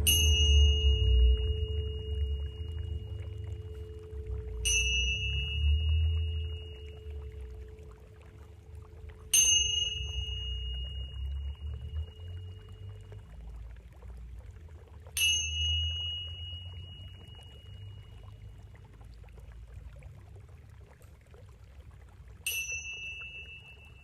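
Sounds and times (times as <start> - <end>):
high-pitched metal chime ringing: 0.0 - 7.8, 9.3 - 13.0, 15.2 - 18.4, 22.5 - 24.0
water trickling: 0.0 - 24.0.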